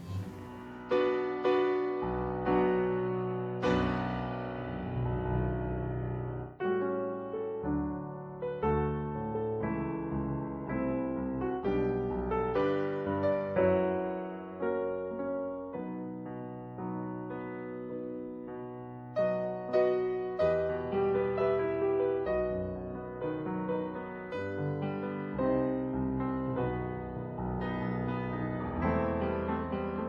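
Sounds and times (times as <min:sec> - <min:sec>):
slow solo piano: 0:00.0 - 0:30.0.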